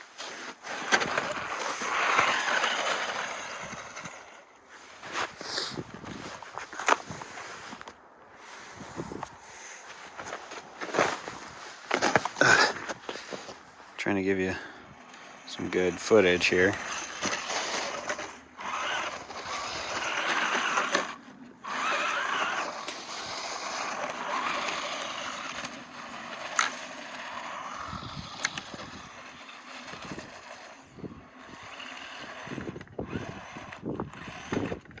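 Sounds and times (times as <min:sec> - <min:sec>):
rc truck motor whine: 0:00.0 - 0:06.4, 0:14.3 - 0:35.0
tyre noise on rough ground: 0:00.0 - 0:35.0.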